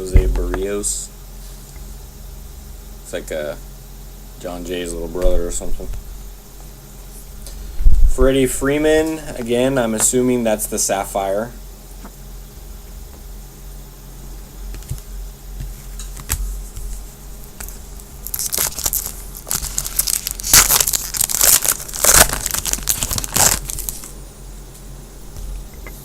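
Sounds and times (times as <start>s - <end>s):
foil wrapper crinkling and tearing: 17.5s - 24.2s.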